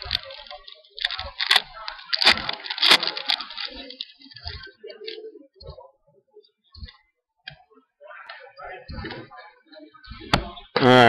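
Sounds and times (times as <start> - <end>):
wrapper crinkling: 0.0 - 4.6.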